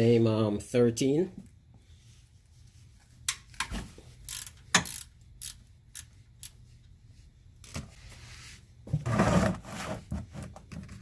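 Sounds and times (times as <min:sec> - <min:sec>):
ratchet wrench clicking: 0:04.2 - 0:06.6.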